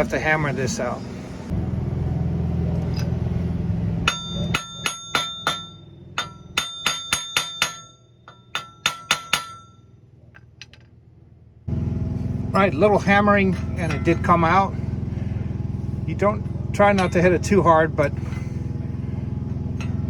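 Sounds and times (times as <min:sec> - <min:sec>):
low hum: 0:00.0 - 0:20.0
hammer tapping metal: 0:04.0 - 0:09.8.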